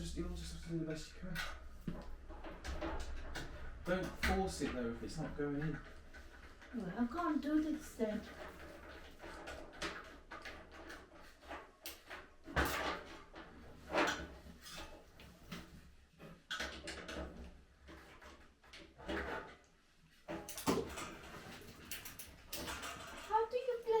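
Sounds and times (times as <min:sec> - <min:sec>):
barbecue parts knocking and clunking: 0:01.3 - 0:06.8, 0:20.3 - 0:24.0.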